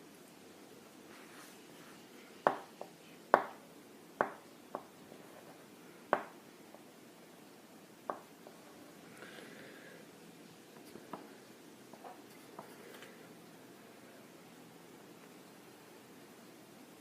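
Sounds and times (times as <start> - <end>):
pencil tapping on hard surface: 2.4 - 3.6, 4.2 - 4.9, 6.1 - 6.4.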